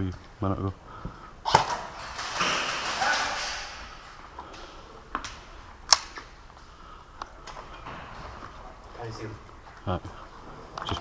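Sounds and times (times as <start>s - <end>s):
airsoft gun cracks: 1.5s - 4.1s, 5.2s - 6.3s.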